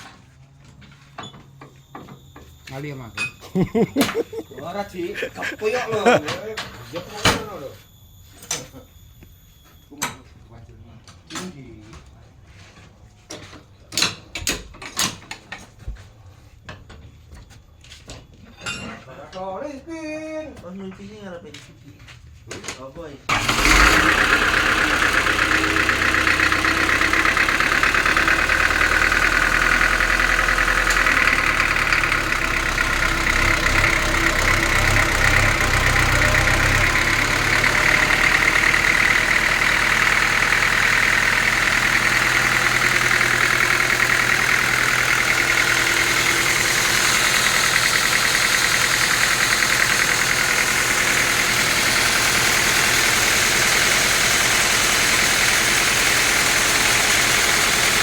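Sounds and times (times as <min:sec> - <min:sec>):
sawmill saw cutting wood: 0:23.3 - 0:58.0.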